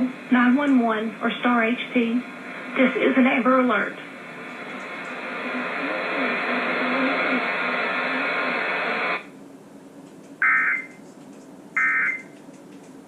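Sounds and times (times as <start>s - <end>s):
radio static hiss: 0.0s - 9.4s
short buzzing data tones: 10.4s - 11.0s, 11.8s - 12.3s.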